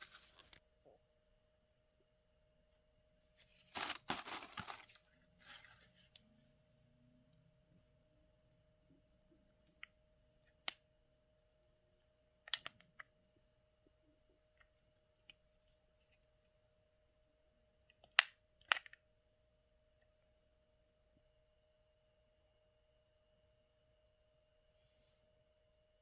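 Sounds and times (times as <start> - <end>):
faint steady hum: 0.0 - 26.0.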